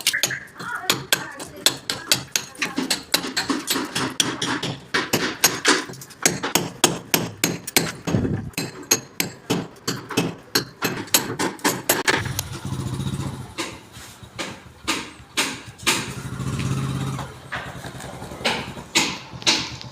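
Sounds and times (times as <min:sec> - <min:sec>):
rapid hammer blows: 0:00.0 - 0:19.9
small engine running: 0:12.1 - 0:13.8, 0:14.6 - 0:19.9.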